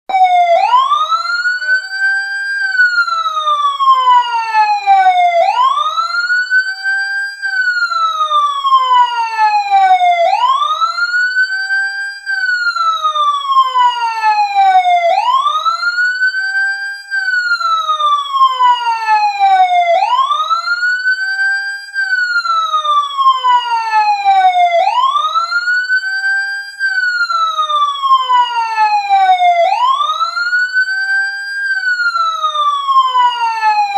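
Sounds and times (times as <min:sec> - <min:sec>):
siren wailing up and down: 0:00.1 - 0:33.9.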